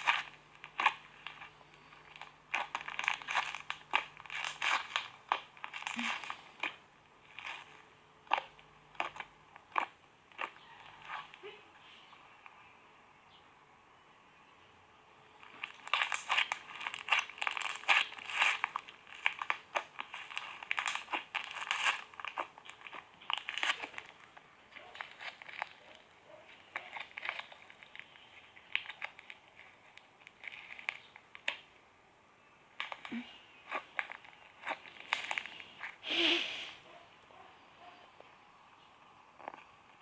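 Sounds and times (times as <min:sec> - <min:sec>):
slime crackling and popping: 0:00.0 - 0:11.5, 0:15.4 - 0:31.8, 0:32.7 - 0:36.0.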